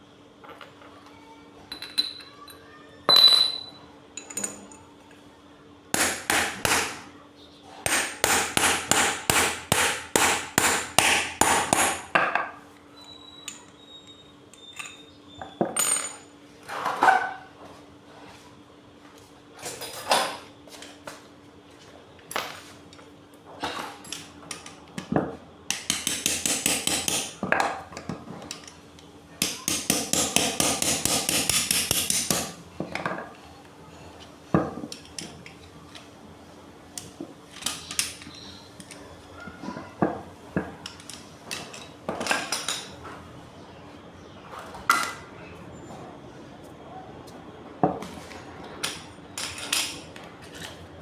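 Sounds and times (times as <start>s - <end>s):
hammer striking metal: 6.0s - 7.0s, 7.9s - 12.1s, 25.7s - 27.3s, 29.4s - 32.5s.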